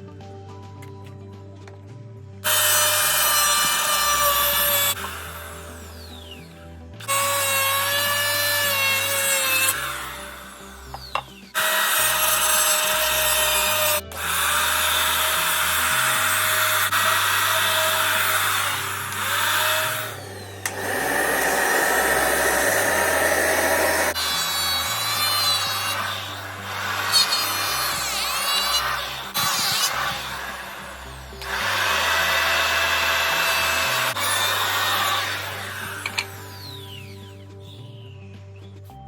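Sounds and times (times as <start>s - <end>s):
power tool motor whine: 2.5s - 37.6s.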